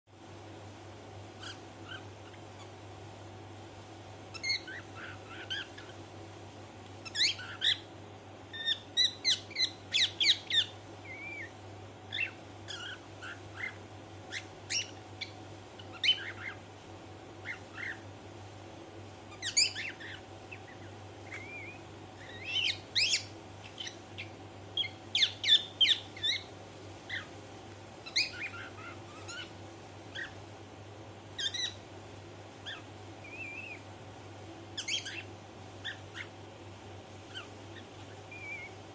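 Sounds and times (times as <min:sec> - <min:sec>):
cockatiel chirping and squawking: 0:01.4 - 0:02.8, 0:04.3 - 0:06.0, 0:07.0 - 0:07.9, 0:08.5 - 0:16.6, 0:17.4 - 0:18.1, 0:19.3 - 0:26.5, 0:27.1 - 0:27.3, 0:28.0 - 0:30.4, 0:31.4 - 0:31.8, 0:32.6 - 0:33.9, 0:34.8 - 0:36.4, 0:37.3 - 0:38.8.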